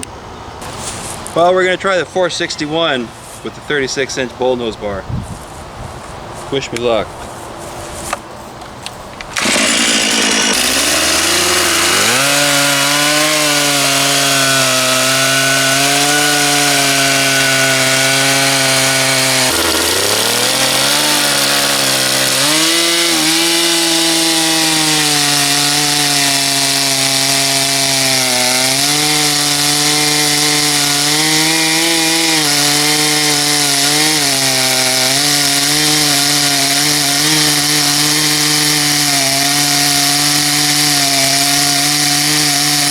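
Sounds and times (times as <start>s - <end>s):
chainsaw cutting wood: 9.2s - 42.9s.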